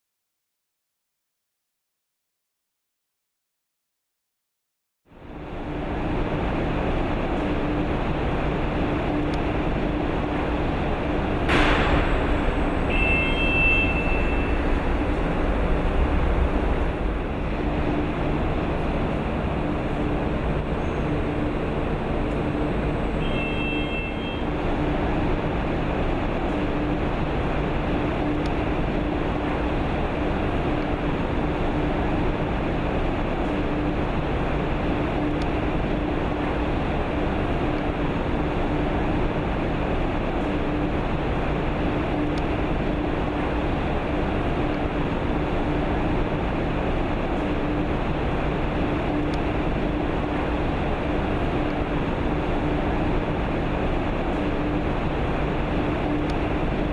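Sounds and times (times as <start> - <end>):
machinery humming: 5.2 - 56.9
brief high tones: 12.6 - 15.3.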